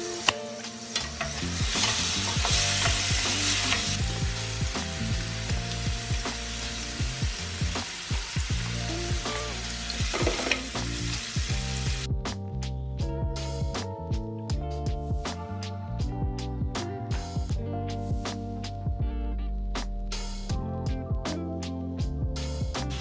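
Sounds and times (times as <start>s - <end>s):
food sizzling in a pan: 0.0s - 12.1s
utensil tapping and scraping pan: 10.1s - 10.6s.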